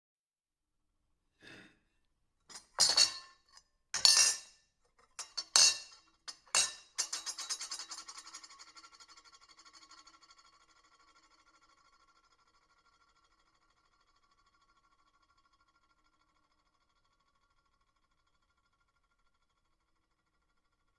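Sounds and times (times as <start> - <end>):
silverware clinking on a plate: 2.5 - 3.4, 4.0 - 4.5, 5.1 - 8.6.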